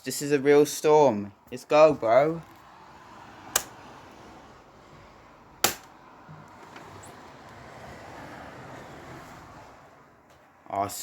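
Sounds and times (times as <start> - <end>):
sharp clicks: 3.5 - 3.8.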